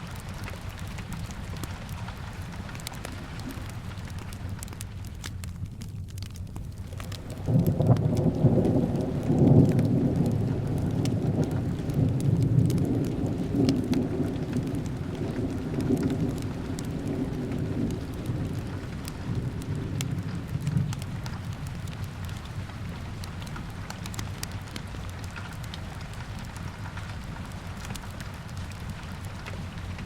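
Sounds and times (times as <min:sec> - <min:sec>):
fireplace crackling: 0:00.0 - 0:30.0
steady rain: 0:00.0 - 0:30.0
thunder rolling: 0:06.9 - 0:24.2.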